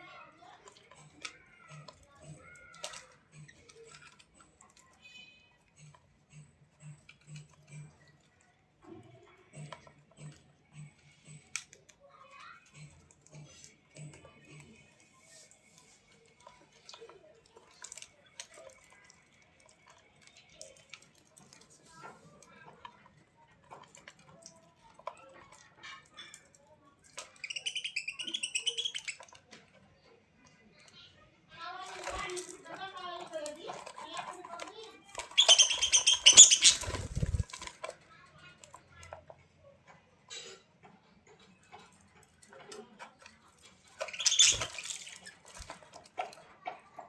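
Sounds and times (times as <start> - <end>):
bird clicking and chirping: 23.6 - 29.6, 33.2 - 37.9, 41.4 - 46.3
bird chirping: 27.3 - 29.3, 35.2 - 37.5, 44.0 - 45.2.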